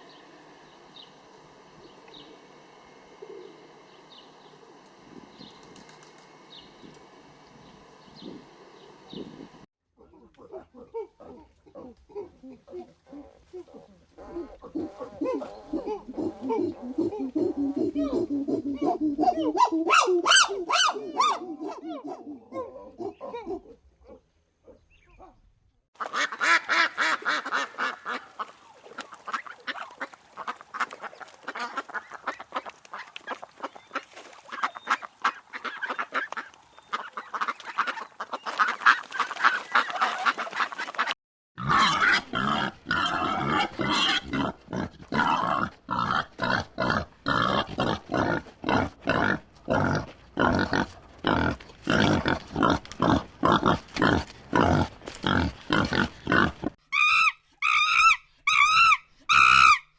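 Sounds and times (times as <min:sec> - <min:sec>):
pigs grunting: 0:10.1 - 0:19.6, 0:41.6 - 0:56.8
flock of waterfowl calling: 0:26.0 - 0:41.2.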